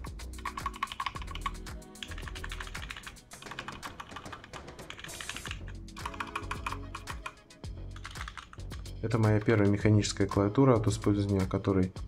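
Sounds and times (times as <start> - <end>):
background music: 0.0 - 12.0
mechanical keyboard typing: 0.4 - 7.4, 8.0 - 8.6.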